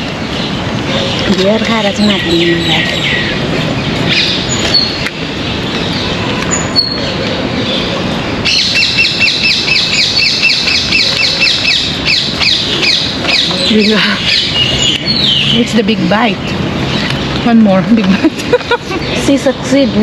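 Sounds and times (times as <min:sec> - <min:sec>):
birds chirping: 0:00.0 - 0:20.0
bird rapid high chirps: 0:08.5 - 0:15.8.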